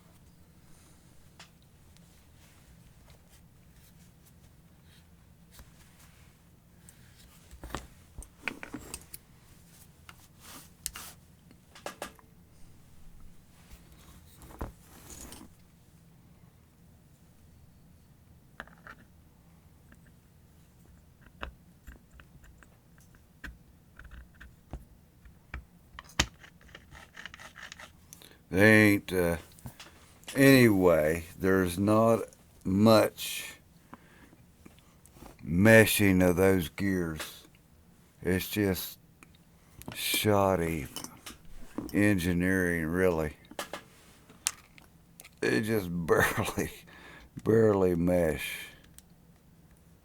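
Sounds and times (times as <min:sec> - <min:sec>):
small metal parts clicking: 0:26.0 - 0:27.9.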